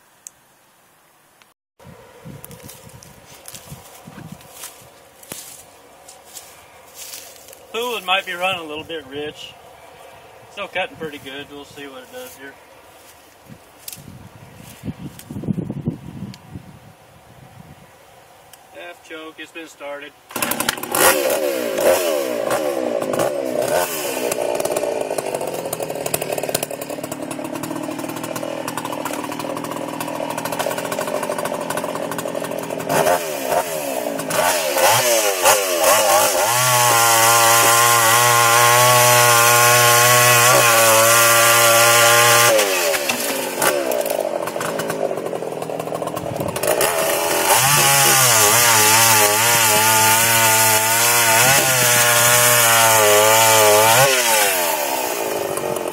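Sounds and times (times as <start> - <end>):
chainsaw revving: 20.3 - 55.9.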